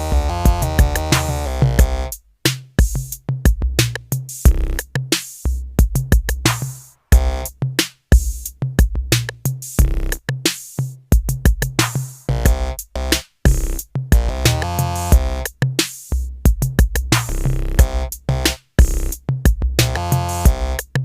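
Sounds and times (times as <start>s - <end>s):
synth chords: 0.0s - 2.1s, 7.2s - 7.5s, 12.3s - 15.4s, 17.5s - 19.1s
drum machine beat: 0.0s - 21.0s
deep bass hits: 7.1s - 7.5s, 12.4s - 12.8s.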